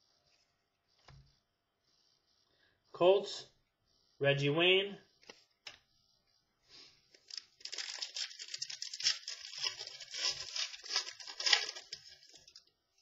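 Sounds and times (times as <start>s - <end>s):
card pack wrapper crinkling: 7.2s - 12.7s.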